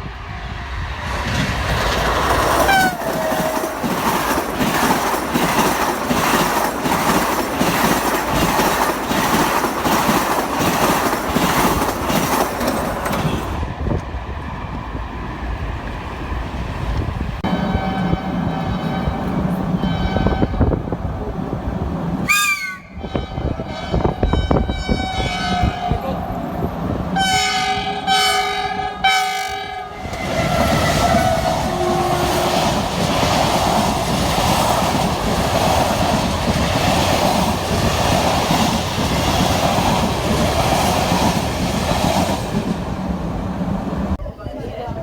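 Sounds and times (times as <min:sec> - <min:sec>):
train wheels rumbling on rails: 0:00.0 - 0:45.0
train horn blasts: 0:02.6 - 0:03.5, 0:17.4 - 0:20.8, 0:22.3 - 0:26.2, 0:27.2 - 0:32.3.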